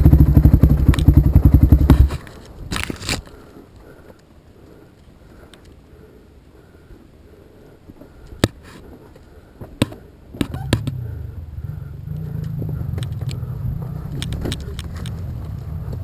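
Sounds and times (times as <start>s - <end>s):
vehicle engine running: 0.0s - 2.2s, 10.4s - 16.0s
sharp clicks: 12.1s - 16.0s.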